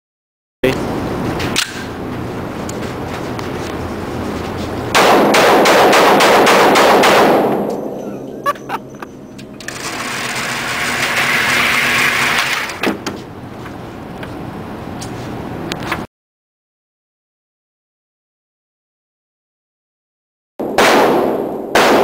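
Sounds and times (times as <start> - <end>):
rapid gunfire: 4.9 - 7.7, 20.6 - 22.0.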